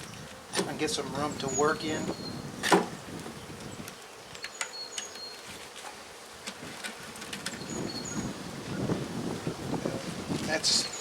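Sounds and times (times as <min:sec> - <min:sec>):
wooden hive frames clicking: 0:00.0 - 0:07.9
bees buzzing: 0:00.0 - 0:11.0.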